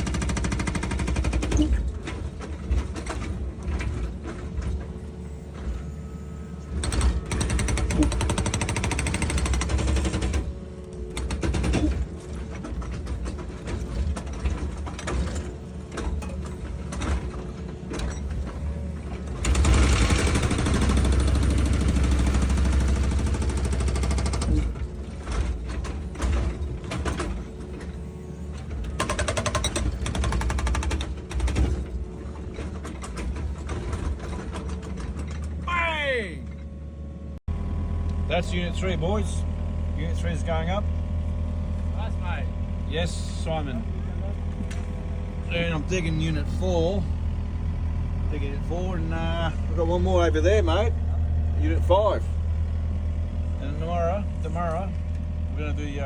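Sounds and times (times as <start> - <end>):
excavator diesel engine running: 0.0 - 56.0
knocks and scraping: 1.0 - 35.8.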